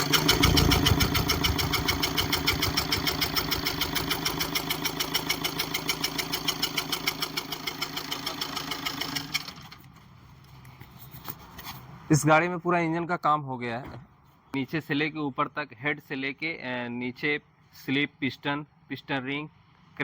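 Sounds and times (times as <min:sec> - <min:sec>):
engine idling with ticking knock: 0:00.0 - 0:09.6.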